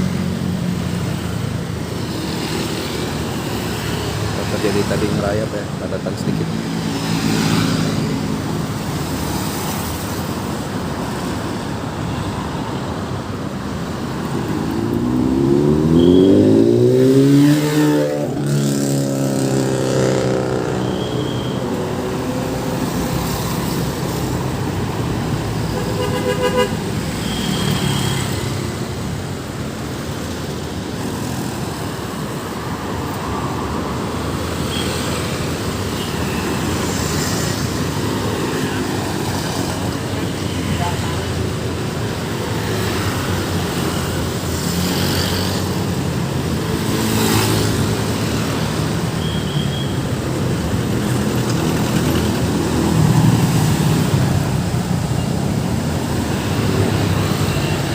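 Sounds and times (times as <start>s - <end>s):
road traffic noise: 0.0s - 57.9s
car horn toot: 25.8s - 28.2s.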